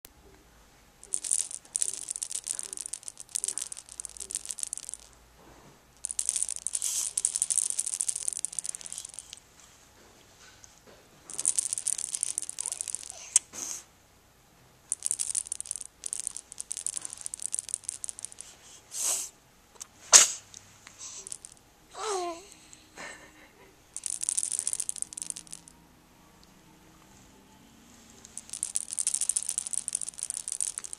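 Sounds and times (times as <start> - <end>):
hand-shaken rattle: 1.0 - 5.2, 6.0 - 9.4, 11.3 - 13.4, 14.9 - 18.7, 21.0 - 21.6, 24.0 - 25.7, 28.2 - 30.9.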